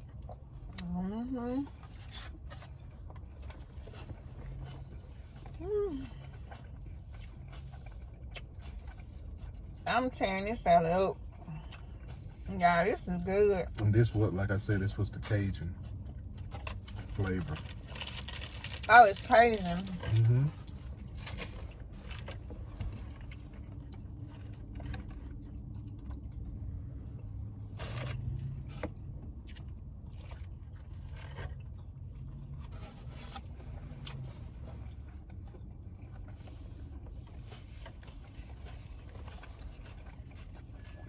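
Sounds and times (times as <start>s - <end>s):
person chewing food: 0.0s - 1.0s, 1.7s - 9.8s, 11.2s - 12.5s, 13.7s - 18.9s, 19.8s - 41.0s
food crunching: 1.8s - 9.8s, 13.7s - 41.0s.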